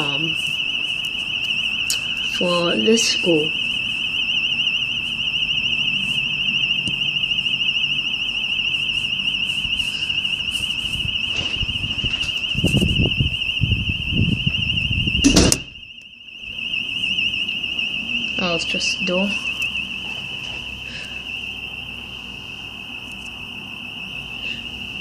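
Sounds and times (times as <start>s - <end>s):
warbling electronic alarm: 0.0s - 25.0s
door banging: 15.2s - 15.7s.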